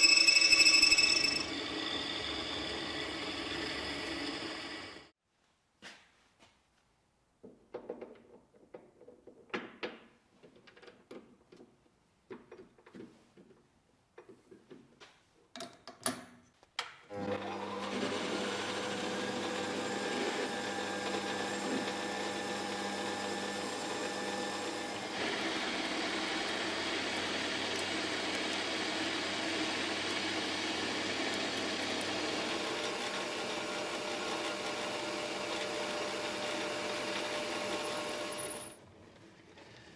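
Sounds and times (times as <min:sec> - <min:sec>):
workshop machine motor whine: 0:00.0 - 0:05.1, 0:17.1 - 0:38.8.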